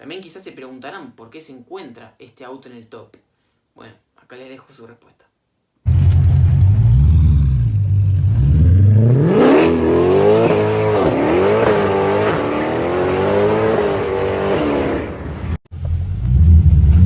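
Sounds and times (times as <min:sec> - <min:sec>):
car engine revving: 0:05.8 - 0:17.0.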